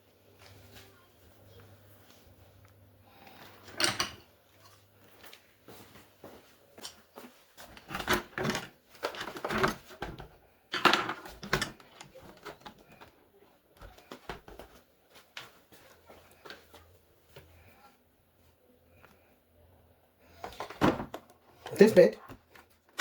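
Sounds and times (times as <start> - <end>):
plastic parts clicking and rattling: 7.7 - 13.2.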